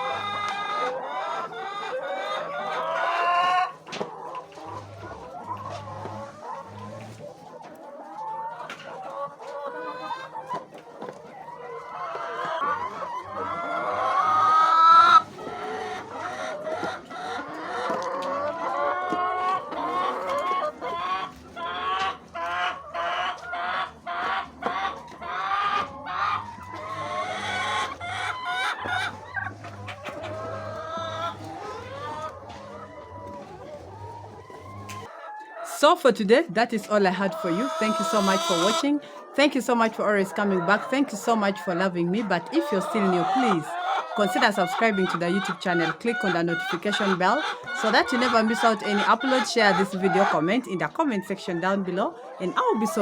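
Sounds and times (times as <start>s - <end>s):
chickens clucking and calling: 0.0s - 53.0s.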